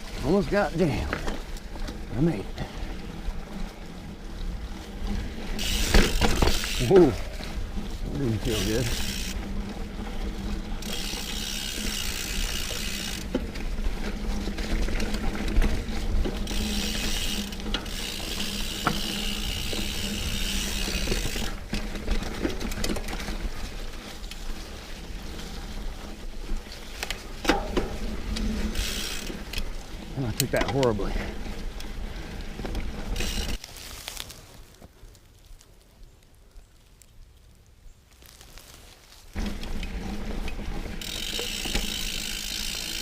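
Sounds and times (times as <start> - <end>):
bike drivetrain rattling: 0.0 - 35.8, 38.2 - 43.0
bike tyres rumbling on dirt: 0.0 - 36.6, 37.4 - 43.0
freehub ratchet clicking: 5.6 - 6.9, 8.4 - 9.4, 10.8 - 13.3, 16.4 - 21.6, 28.7 - 29.7, 33.2 - 33.6, 41.0 - 43.0.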